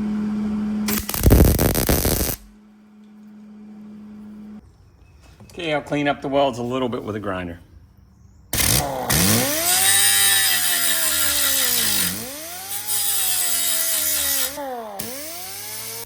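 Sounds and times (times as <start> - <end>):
angle grinder motor whine: 0.0 - 2.5, 8.6 - 16.0.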